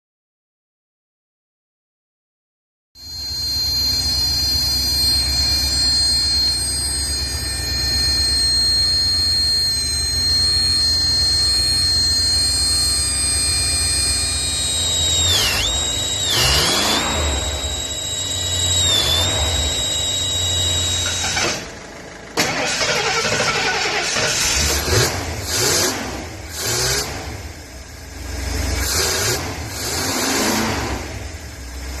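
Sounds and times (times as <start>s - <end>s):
high-pitched squeal: 3.0s - 27.3s
engine running: 3.1s - 32.0s.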